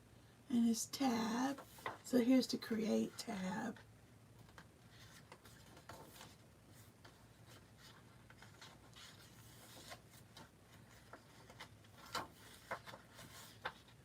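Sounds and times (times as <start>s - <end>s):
paper pages rustling: 1.5s - 2.1s, 4.4s - 14.0s.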